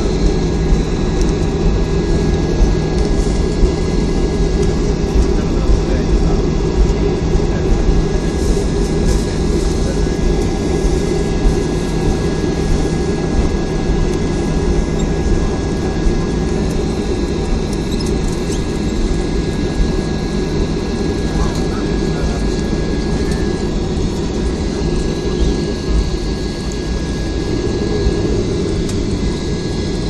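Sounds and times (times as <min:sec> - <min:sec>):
low rumble of engines and wheels: 0:00.0 - 0:30.0
thin steady whine: 0:00.0 - 0:30.0.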